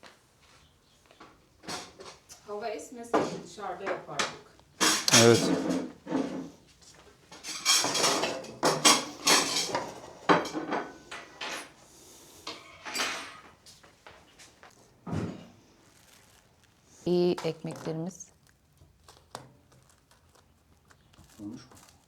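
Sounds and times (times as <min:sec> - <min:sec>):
dishes and cutlery clattering: 0:03.2 - 0:06.5, 0:07.3 - 0:11.8, 0:12.5 - 0:13.5.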